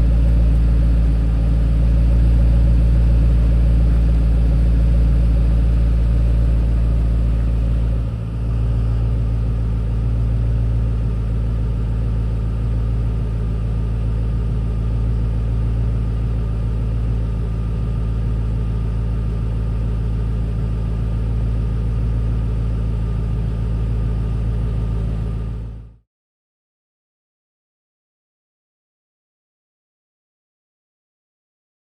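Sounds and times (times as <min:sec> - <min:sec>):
car engine idling: 0:00.0 - 0:25.8.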